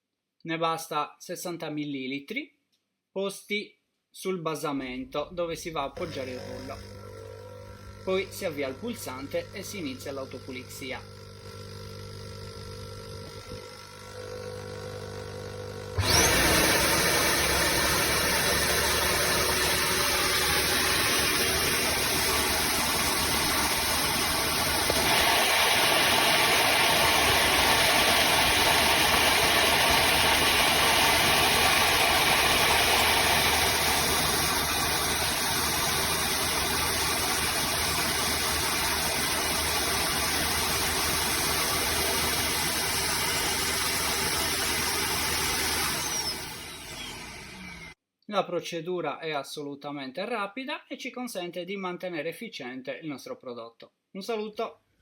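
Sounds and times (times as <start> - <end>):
vacuum motor and brush roll: 6.0 - 9.4, 13.2 - 48.0.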